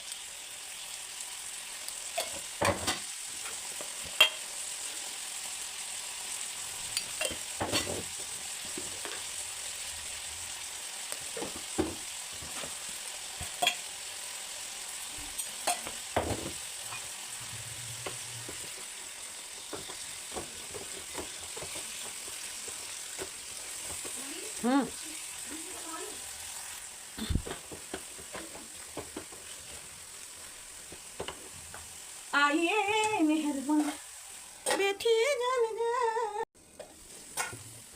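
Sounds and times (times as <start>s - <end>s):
vegetables sizzling in a pan: 0.0s - 37.9s
spatula scraping a pan: 15.3s - 24.4s, 33.7s - 34.8s.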